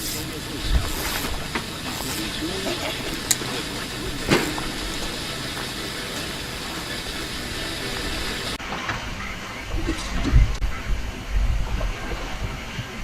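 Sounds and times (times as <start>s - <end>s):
road and engine noise in car: 0.0s - 8.6s.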